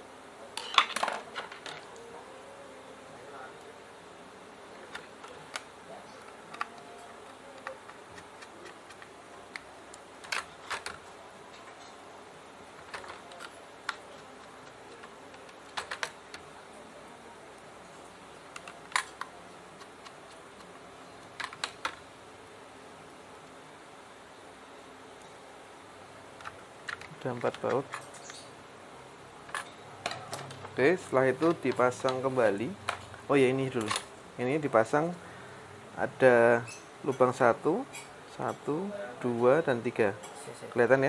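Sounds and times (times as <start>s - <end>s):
screwdriver and parts clicking: 12.8s - 16.4s.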